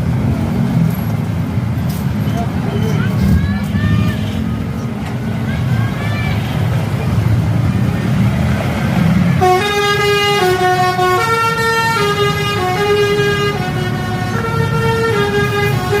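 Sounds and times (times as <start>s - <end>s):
musical bus air horn melody: 9.4s - 16.0s.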